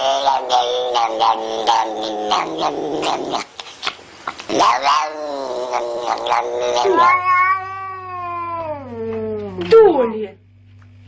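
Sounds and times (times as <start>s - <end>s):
cat yowling: 4.7s - 9.6s.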